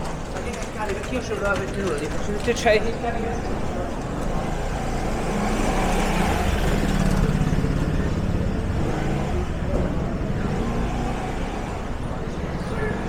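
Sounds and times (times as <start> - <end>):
vehicle engine passing close: 4.0 - 13.0.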